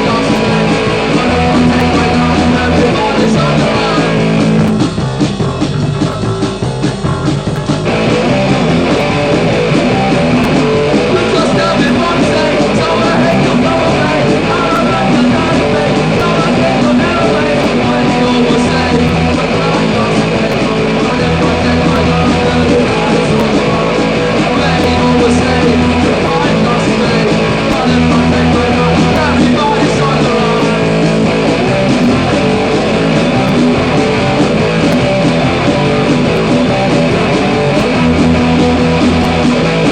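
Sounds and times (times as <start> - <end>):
punk rock band with electric guitars: 0.0 - 39.9.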